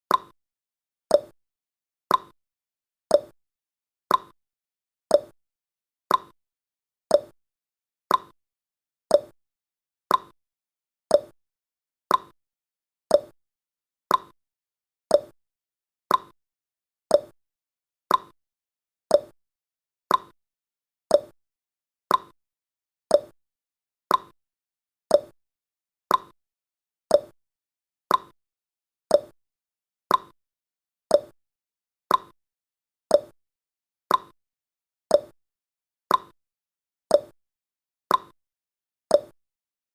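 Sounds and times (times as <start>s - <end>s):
clock ticking: 0.1s - 0.3s, 1.1s - 1.3s, 2.1s - 2.3s, 3.1s - 3.3s, 4.1s - 4.3s, 5.1s - 5.3s, 6.1s - 6.3s, 7.1s - 7.3s, 8.1s - 8.3s, 9.1s - 9.3s, 10.1s - 10.3s, 11.1s - 11.3s, 12.1s - 12.3s, 13.1s - 13.3s, 14.1s - 14.3s, 15.1s - 15.3s, 16.1s - 16.3s, 17.1s - 17.3s, 18.1s - 18.3s, 19.1s - 19.3s, 20.1s - 20.3s, 21.1s - 21.3s, 22.1s - 22.3s, 23.1s - 23.3s, 24.1s - 24.3s, 25.1s - 25.3s, 26.1s - 26.3s, 27.1s - 27.3s, 28.1s - 28.3s, 29.1s - 29.3s, 30.1s - 30.4s, 31.1s - 31.3s, 32.1s - 32.4s, 33.1s - 33.3s, 34.1s - 34.4s, 35.1s - 35.4s, 36.1s - 36.4s, 37.1s - 37.4s, 38.1s - 38.4s, 39.1s - 39.4s.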